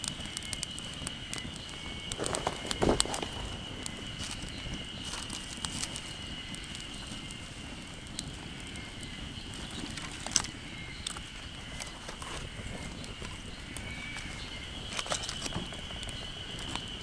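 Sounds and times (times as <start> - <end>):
campfire crackling: 0.0 - 17.0
sharp pops: 1.6 - 6.0.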